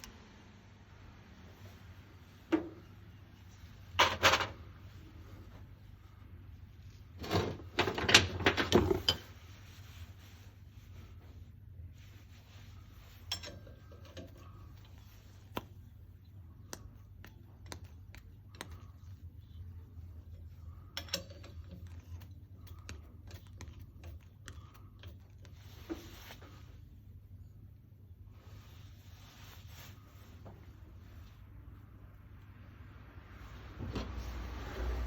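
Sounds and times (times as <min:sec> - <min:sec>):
steady low hum: 0:09.0 - 0:35.0.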